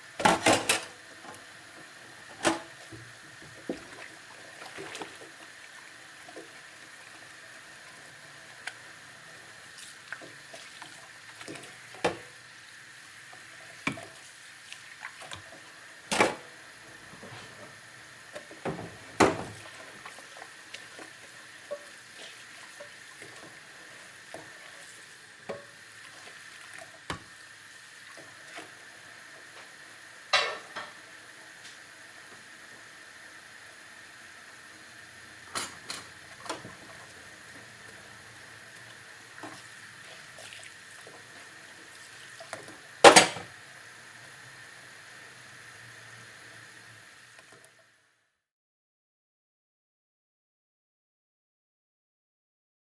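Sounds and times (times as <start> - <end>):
running water: 0.0 - 31.5, 34.1 - 47.8
dishes clinking in a sink: 0.2 - 1.0, 30.3 - 31.0, 35.5 - 36.7, 43.0 - 43.5.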